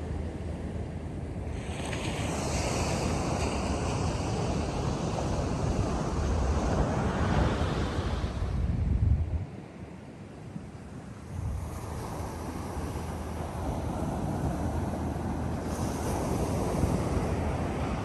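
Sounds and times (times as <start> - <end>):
wind buffeting microphone: 2.1 - 9.6
ocean surf breaking: 11.8 - 18.0.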